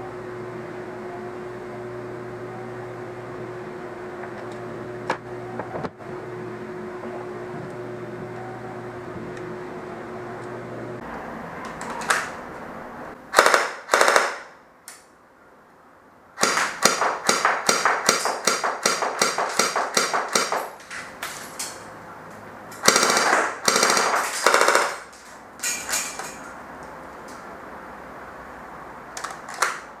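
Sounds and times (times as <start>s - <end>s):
airsoft pistol firing bursts: 13.3s - 14.6s, 16.4s - 20.8s, 22.8s - 25.1s.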